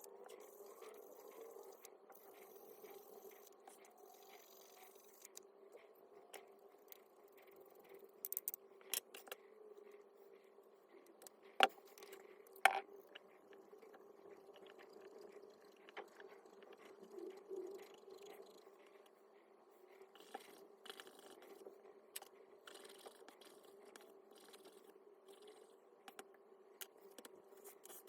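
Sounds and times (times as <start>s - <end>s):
tools and parts clicking: 8.2s - 9.4s, 11.2s - 12.8s.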